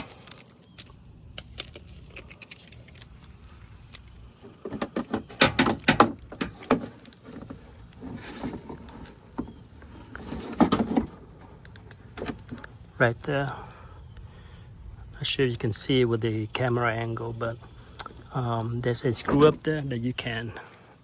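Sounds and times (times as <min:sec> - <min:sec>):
hands handling clicks and taps: 0:00.0 - 0:07.5.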